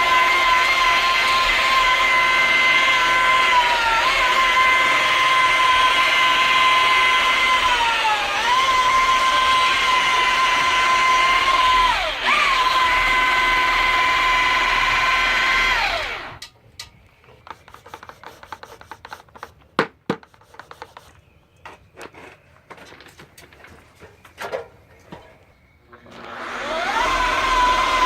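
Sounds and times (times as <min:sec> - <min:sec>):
power tool whining: 0:00.0 - 0:16.5, 0:25.9 - 0:28.0.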